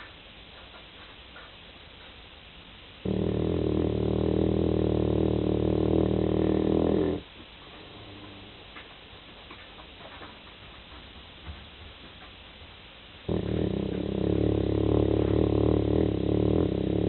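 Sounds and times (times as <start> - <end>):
pet snoring: 3.0 - 8.8, 13.2 - 17.0.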